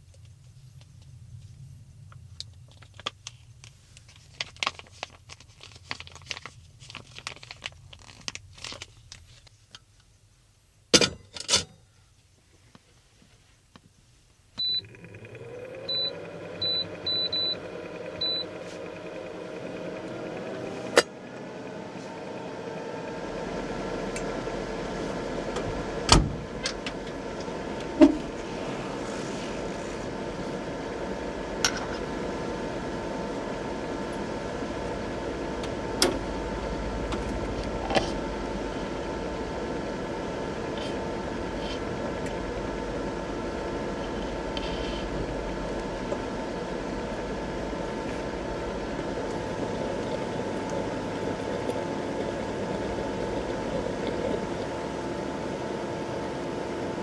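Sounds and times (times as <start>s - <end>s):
vehicle engine starting and idling: 14.6s - 55.3s.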